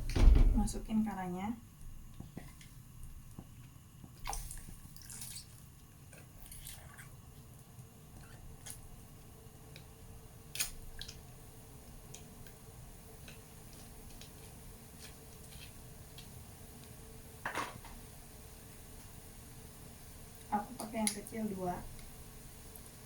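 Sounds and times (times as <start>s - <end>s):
small kitchen clicks and knocks: 0.0s - 1.0s, 17.4s - 18.0s.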